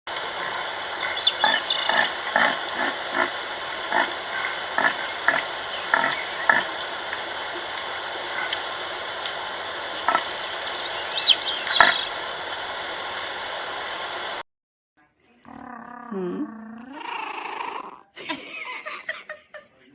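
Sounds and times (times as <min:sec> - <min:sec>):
farm animals calling: 0:00.2 - 0:12.2
high chirping calls: 0:00.4 - 0:12.2.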